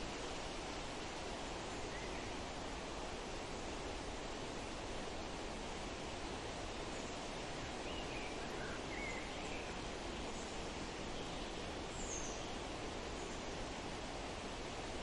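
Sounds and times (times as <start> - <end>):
wind rushing through trees: 0.0 - 15.0.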